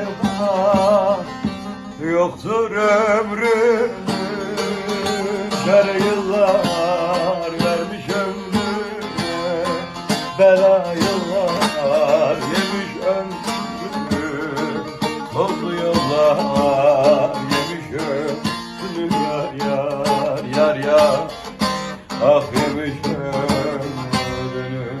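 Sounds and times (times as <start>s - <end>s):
acoustic guitar: 0.0s - 25.0s
person singing with vibrato: 0.0s - 25.0s.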